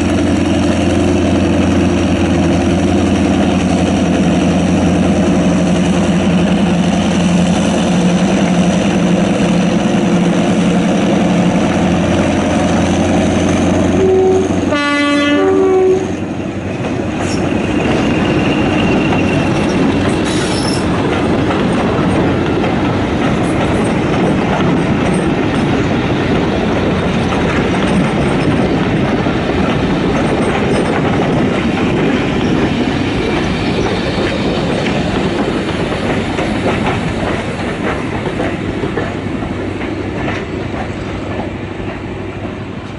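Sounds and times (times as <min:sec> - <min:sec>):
diesel locomotive engine running: 0:00.0 - 0:42.9
train wheels rumbling on rails: 0:00.0 - 0:42.9
train horn blast: 0:13.9 - 0:16.2.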